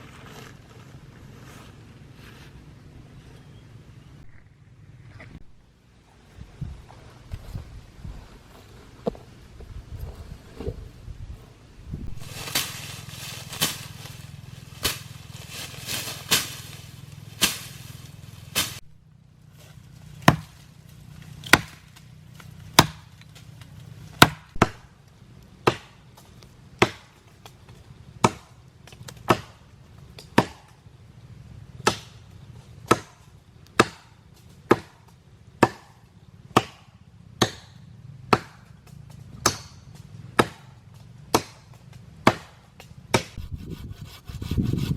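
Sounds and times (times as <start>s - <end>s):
blade chopping wood: 17.4s - 17.9s, 20.2s - 20.6s, 21.4s - 23.4s, 24.2s - 24.9s, 25.6s - 26.0s, 26.8s - 27.2s, 28.2s - 29.6s, 30.2s - 30.7s, 31.8s - 32.2s, 33.8s - 35.0s, 35.6s - 36.0s, 36.6s - 43.5s.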